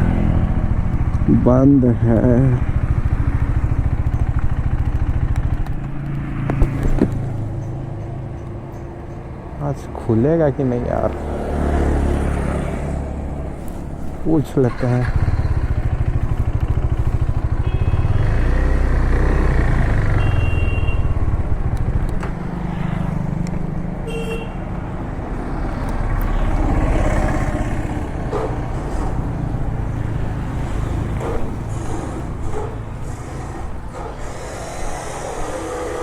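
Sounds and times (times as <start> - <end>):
motorcycle engines running: 0.0 - 36.0
street noise: 0.0 - 36.0
heavy engine rumble: 12.8 - 36.0
vehicle horns tooting: 17.5 - 18.8, 20.0 - 21.4, 24.0 - 24.8.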